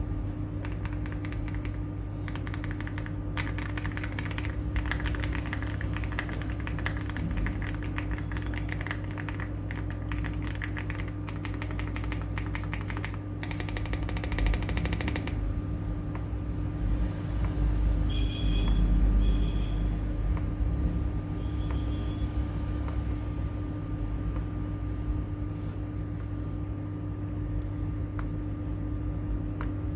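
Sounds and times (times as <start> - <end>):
mechanical keyboard typing: 0.6 - 15.4.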